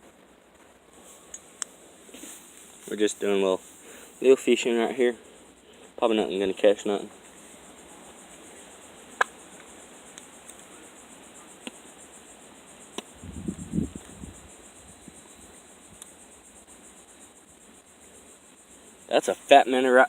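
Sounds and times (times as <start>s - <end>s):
crickets trilling: 0.2s - 20.0s
faint ticks: 11.6s - 11.8s, 15.9s - 16.2s.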